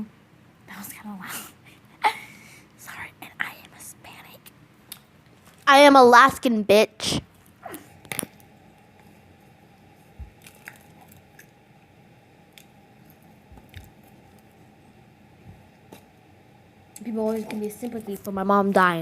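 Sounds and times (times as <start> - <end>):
low steady hum: 0.0 - 19.0
chewing and mouth clicks: 10.2 - 11.6, 12.5 - 14.6.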